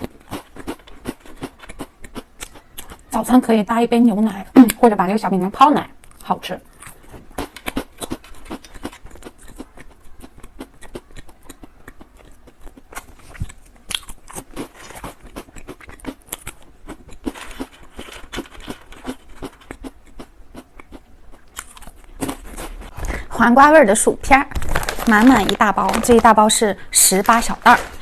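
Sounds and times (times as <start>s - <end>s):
crunching and chewing biscuit: 0.0s - 3.1s, 6.0s - 23.3s, 24.5s - 26.2s.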